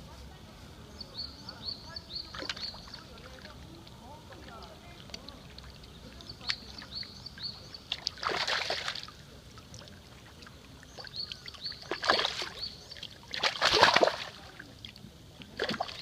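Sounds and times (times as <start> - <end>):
small bird chirping: 1.0 - 3.2, 5.8 - 8.0, 10.8 - 13.2
splashing in pond water: 1.2 - 16.0.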